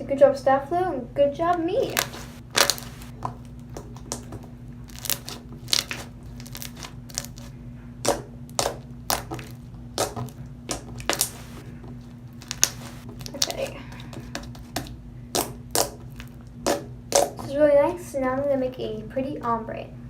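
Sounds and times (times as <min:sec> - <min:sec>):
slime clicking and popping: 0:01.9 - 0:11.6, 0:12.4 - 0:17.5.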